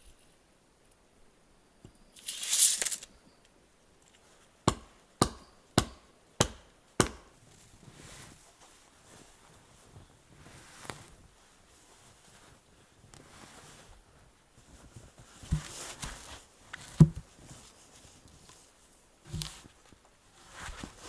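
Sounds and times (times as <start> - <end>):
scraping rustle: 2.2 - 3.2
axe chopping wood: 4.7 - 7.4.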